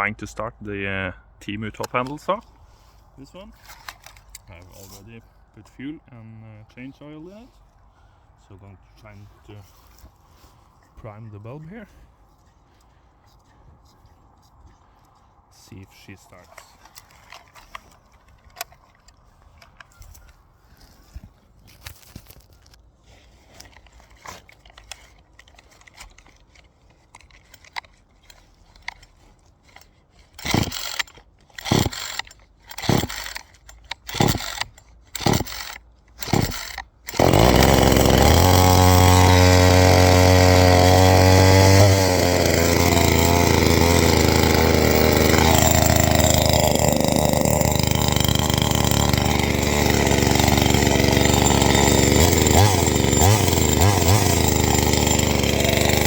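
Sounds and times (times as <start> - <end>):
recoil starter pulls: 23.6 - 56.0
chainsaw engine running: 30.4 - 56.0.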